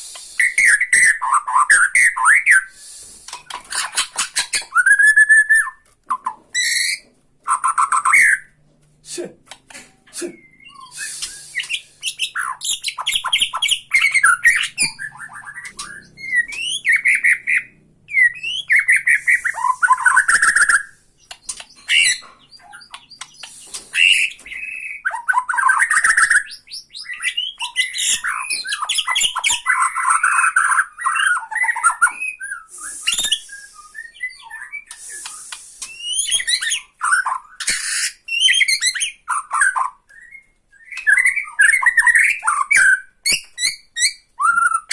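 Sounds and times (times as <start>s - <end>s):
bird singing varied song: 10.2s - 44.9s.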